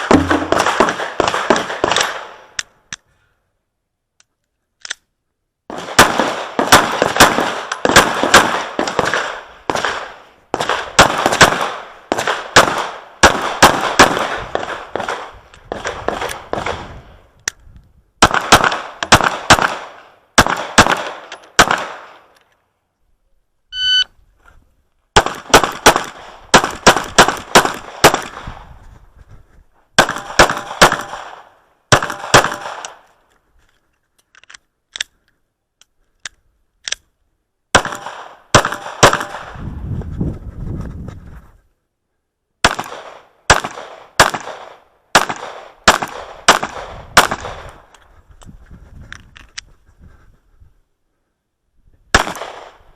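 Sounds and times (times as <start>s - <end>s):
pistol shots ringing: 0.0s - 2.4s, 30.0s - 33.0s, 37.7s - 39.5s
short electronic beep: 23.7s - 24.1s.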